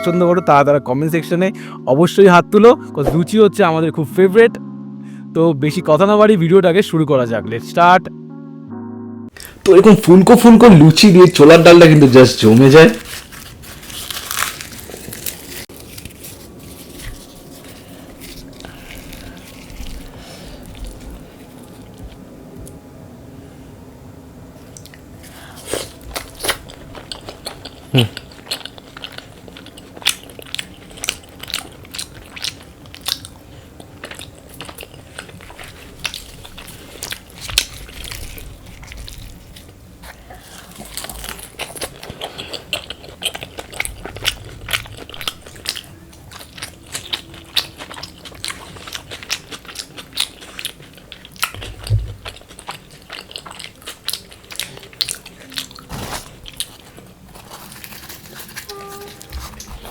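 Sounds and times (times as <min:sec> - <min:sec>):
chewing and biting food: 0:12.4 - 0:22.2, 0:25.6 - 0:59.9.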